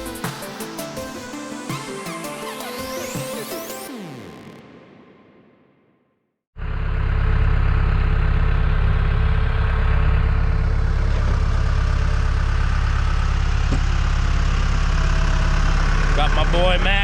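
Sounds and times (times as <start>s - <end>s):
diesel engine droning: 6.6s - 17.0s.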